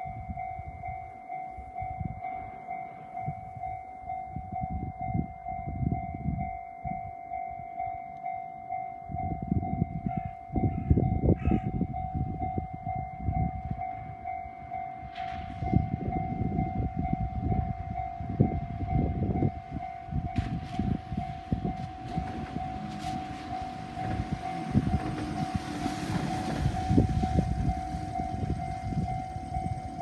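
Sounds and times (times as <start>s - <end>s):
train rumbling: 0.0s - 30.0s.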